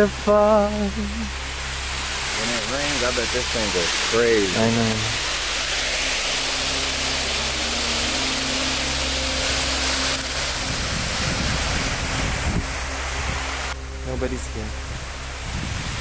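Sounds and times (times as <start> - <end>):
water falling over stone: 1.4 - 12.1.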